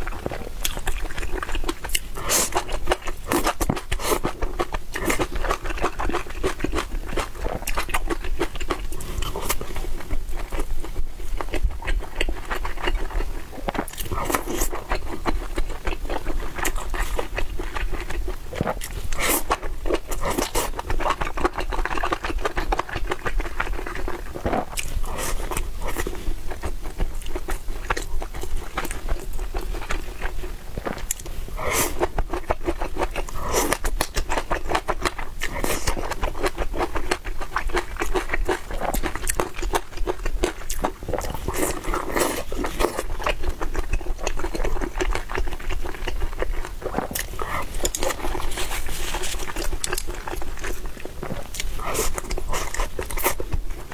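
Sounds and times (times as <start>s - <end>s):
chewing and biting: 0.0s - 53.9s
mouth scrape: 47.0s - 53.4s.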